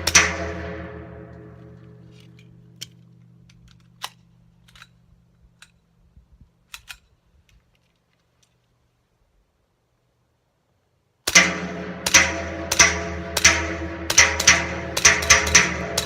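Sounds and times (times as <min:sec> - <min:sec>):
low hum: 0:00.0 - 0:07.8
pistol handling clicks: 0:02.2 - 0:05.9, 0:06.6 - 0:08.7.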